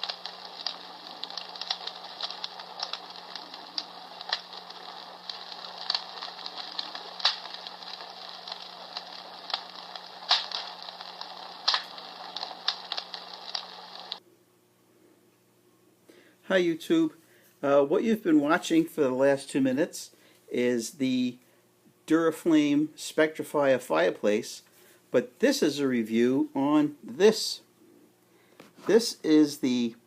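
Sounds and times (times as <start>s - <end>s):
crackling fire from small speaker: 0.0s - 14.2s.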